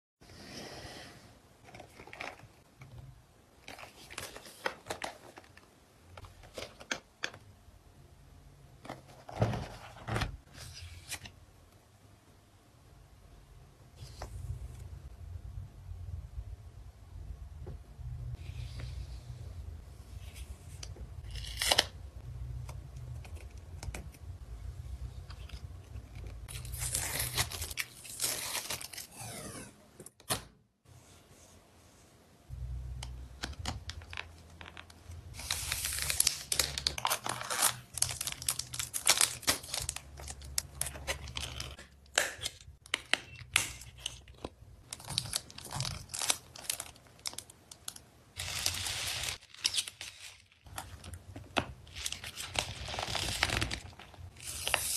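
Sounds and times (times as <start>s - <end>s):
packaging crinkling and tearing: 33.6s - 54.9s.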